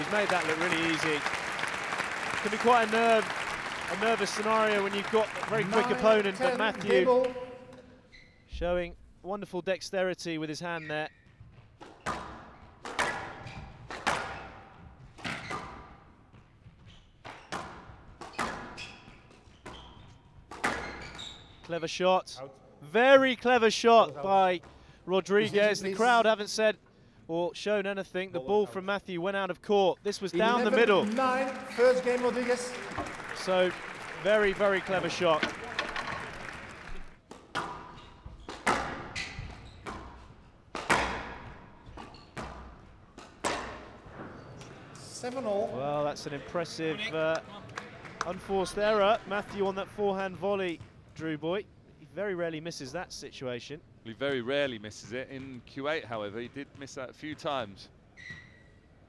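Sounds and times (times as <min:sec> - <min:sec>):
squash ball hitting rackets and walls: 0:11.5 - 0:16.3, 0:17.2 - 0:21.1, 0:37.2 - 0:44.4
squash ball cracking off rackets: 0:11.8 - 0:14.6, 0:39.8 - 0:43.9.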